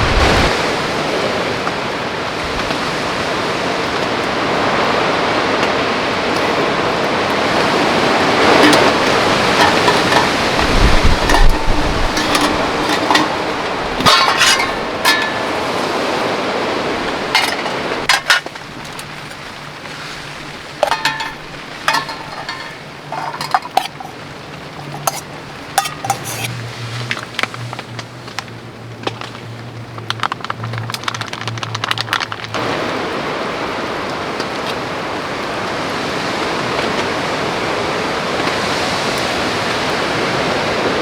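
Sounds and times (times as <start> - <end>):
heavy rain falling: 0.0 - 41.0
cookware clinking and tapping: 7.4 - 15.7, 17.3 - 19.4, 20.7 - 26.5.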